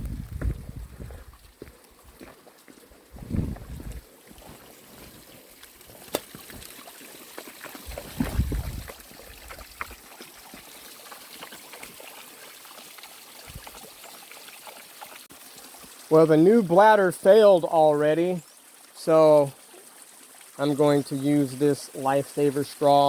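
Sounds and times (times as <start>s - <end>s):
low thuds: 0.0s - 1.3s, 3.2s - 4.0s, 7.9s - 8.9s
small waterfall splashing: 1.4s - 23.0s.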